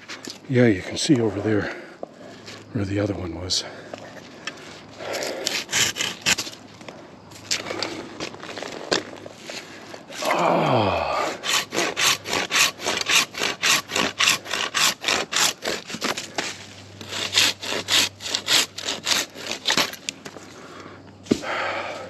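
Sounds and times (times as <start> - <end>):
hand saw cutting branch: 5.0 - 6.6, 10.1 - 20.1.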